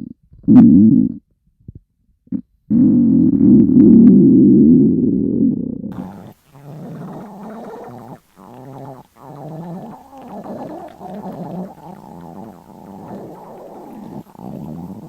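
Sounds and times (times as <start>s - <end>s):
stomach growling: 5.9s - 15.0s.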